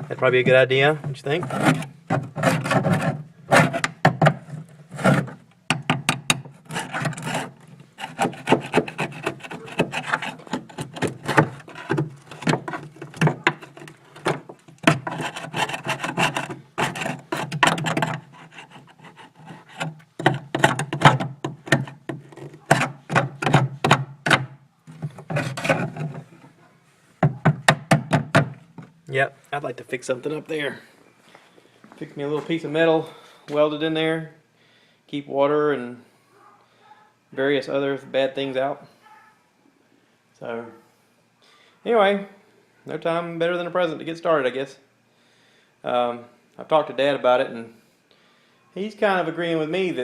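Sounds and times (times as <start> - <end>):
hand scraping rusty metal: 0.0 - 28.9.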